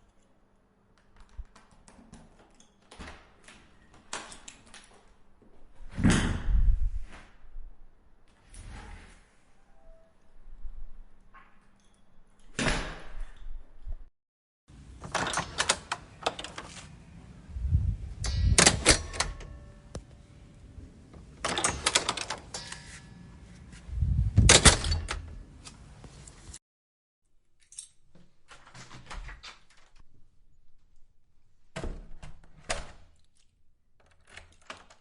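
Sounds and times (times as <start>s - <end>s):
door handle and latch clicking: 15.0s - 16.8s, 18.2s - 20.0s, 21.4s - 22.8s, 24.4s - 25.4s.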